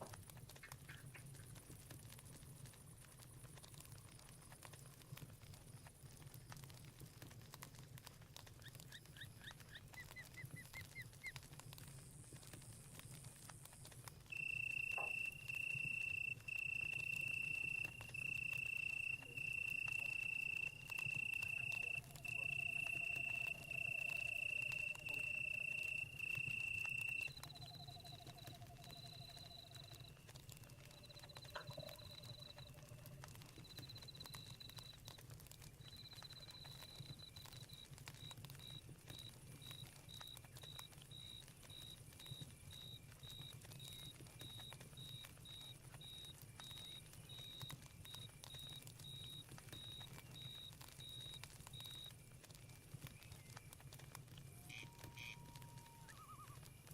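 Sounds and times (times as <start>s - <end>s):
campfire crackling: 0.0s - 56.9s
high chirping insects: 14.3s - 33.0s
frog trills: 14.3s - 33.1s, 54.6s - 56.7s.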